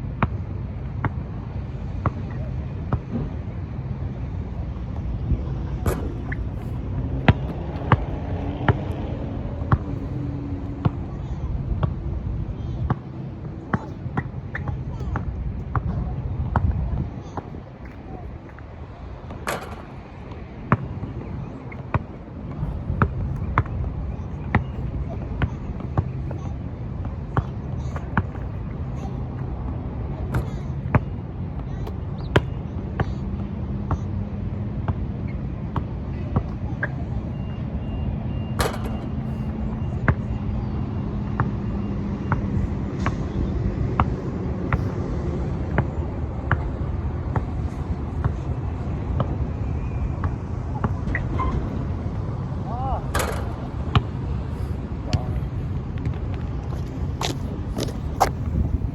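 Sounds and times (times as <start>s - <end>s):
wind rumble on microphone: 0.0s - 30.4s, 42.3s - 58.9s
basketball bouncing on hard court: 5.8s - 9.0s
wind buffeting microphone: 53.6s - 58.9s.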